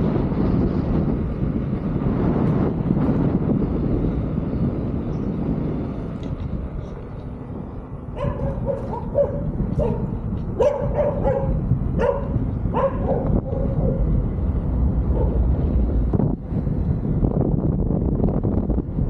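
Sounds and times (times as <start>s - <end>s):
wind rumble on microphone: 0.0s - 19.0s
dog barking: 8.2s - 14.1s, 15.1s - 15.4s.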